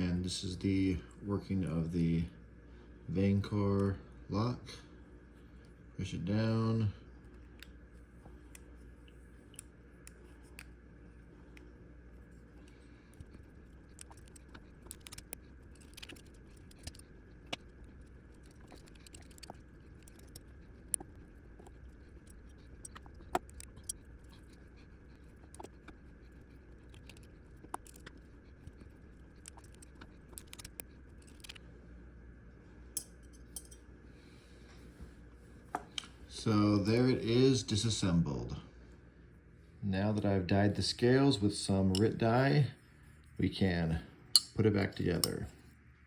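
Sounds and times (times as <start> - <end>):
faint low hum: 0.0 - 46.0
small metal parts clicking: 13.9 - 17.6, 29.4 - 31.6.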